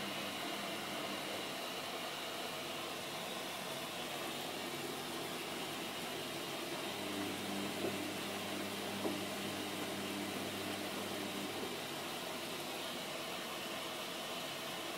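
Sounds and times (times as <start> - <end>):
washing machine hiss: 0.0 - 14.9
low motor hum: 6.7 - 12.2.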